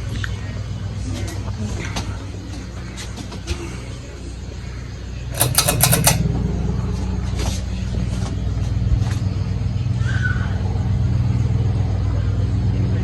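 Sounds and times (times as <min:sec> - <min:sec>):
ceiling fan motor hum: 0:05.3 - 0:07.2.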